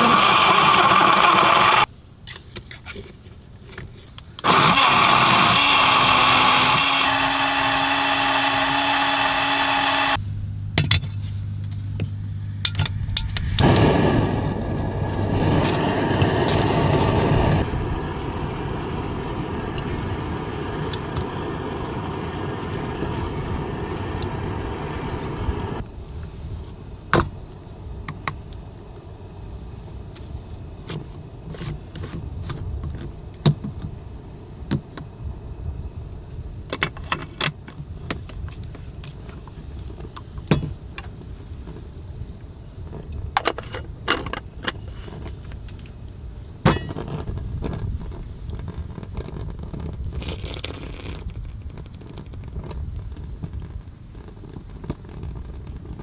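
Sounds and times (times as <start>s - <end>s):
electric blender blending: 0.0s - 1.9s, 4.4s - 10.2s, 13.6s - 25.8s.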